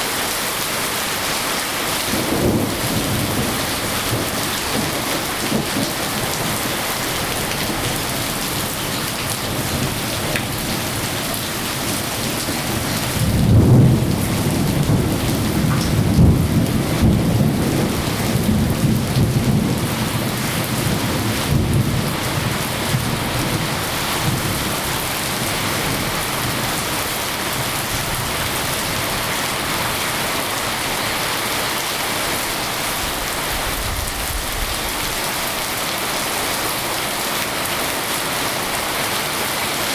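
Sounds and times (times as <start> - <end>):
steady rain falling: 0.0 - 39.9
thunder rumbling: 2.0 - 30.4, 32.3 - 35.8.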